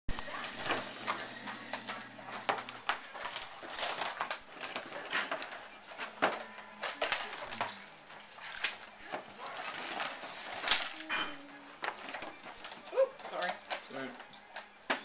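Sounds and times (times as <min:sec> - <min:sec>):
plastic toy parts clattering: 0:02.4 - 0:14.7.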